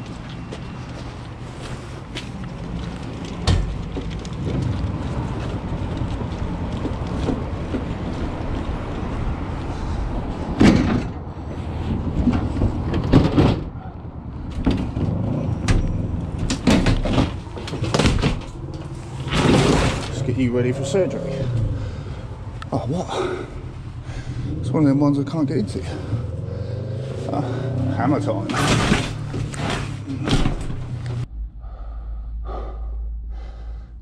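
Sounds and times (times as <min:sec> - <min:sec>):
van engine humming: 0:00.0 - 0:34.0
sharp clunks and knocks: 0:10.6 - 0:11.2, 0:14.5 - 0:20.2.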